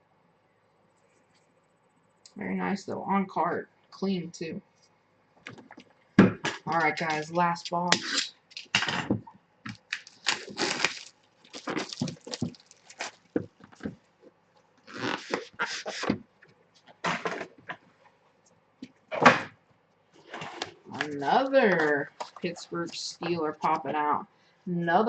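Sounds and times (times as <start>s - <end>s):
cardboard rustling and scraping: 20.2s - 23.8s.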